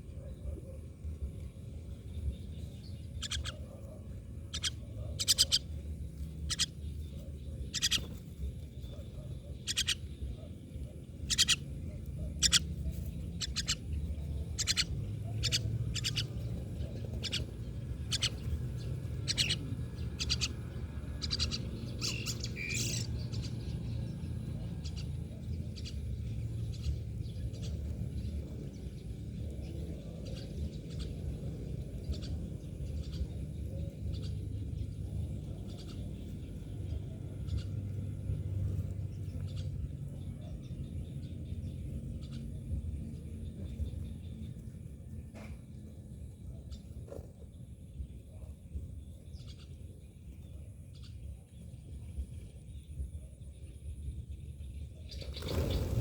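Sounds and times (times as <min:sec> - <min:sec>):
steady low rumble: 0:00.0 - 0:56.0
birds giving sharp high calls: 0:02.9 - 0:29.0, 0:55.1 - 0:56.0.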